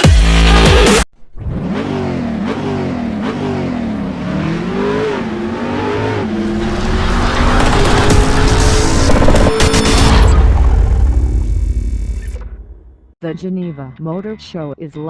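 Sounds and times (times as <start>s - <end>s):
sports car engine revving: 1.4s - 11.1s.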